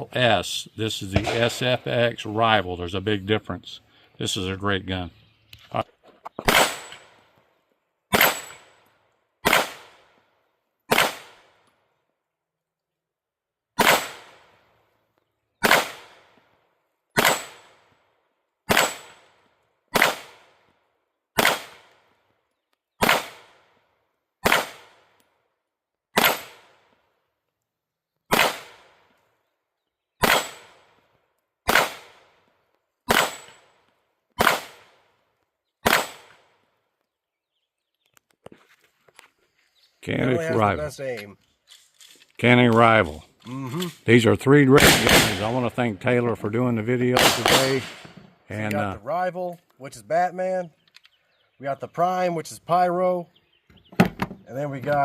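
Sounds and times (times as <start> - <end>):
pistol single shots: 1.1 - 1.8, 6.4 - 7.3, 8.1 - 8.8, 9.4 - 10.2, 10.9 - 11.6, 13.8 - 14.6, 15.6 - 16.4, 17.2 - 17.9, 18.7 - 20.7, 21.4 - 22.1, 23.0 - 23.8, 24.4 - 25.2, 26.2 - 26.9, 28.3 - 29.1, 30.2 - 31.0, 31.6 - 32.4, 33.1 - 33.7, 34.4 - 35.1, 35.8 - 36.6, 44.7 - 45.6, 47.1 - 48.2.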